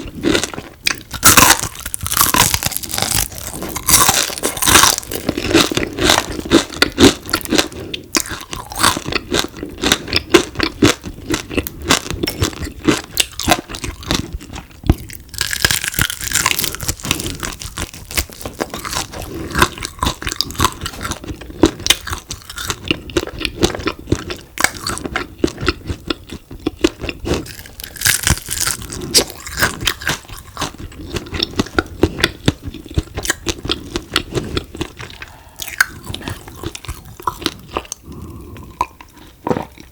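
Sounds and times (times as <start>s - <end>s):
crunching and chewing: 0.0s - 39.9s.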